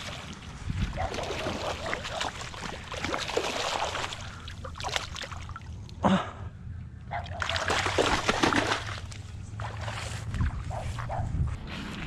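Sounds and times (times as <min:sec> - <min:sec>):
water splashing: 0:00.0 - 0:06.0, 0:07.2 - 0:10.6.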